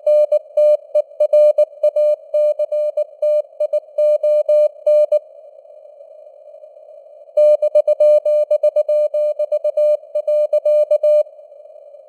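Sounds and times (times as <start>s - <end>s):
morse code tone: 7.4s - 11.2s.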